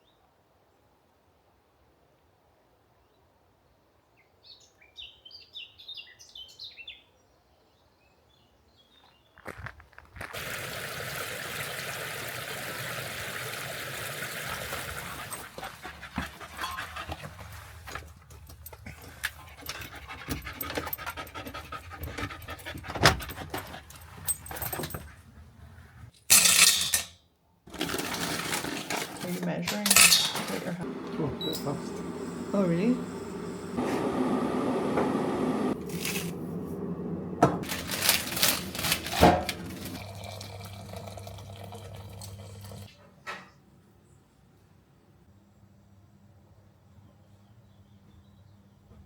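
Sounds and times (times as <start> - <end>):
dog panting: 14.6 - 25.6
rustling: 37.6 - 40.0.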